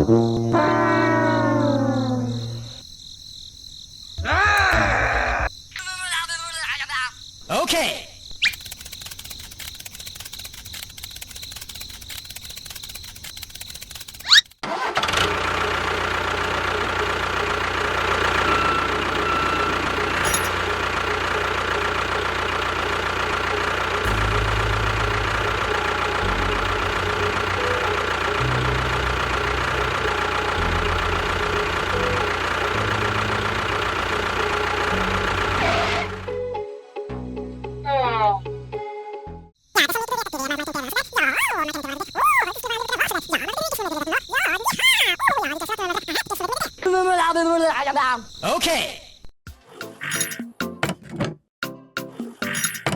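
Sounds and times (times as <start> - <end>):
vehicle engine running: 14.9 - 36.4.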